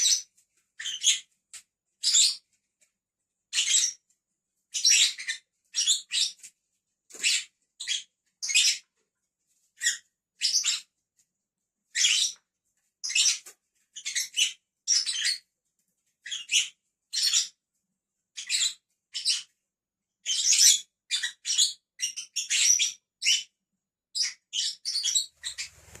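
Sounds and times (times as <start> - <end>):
lovebirds chirping: 24.2 - 26.0.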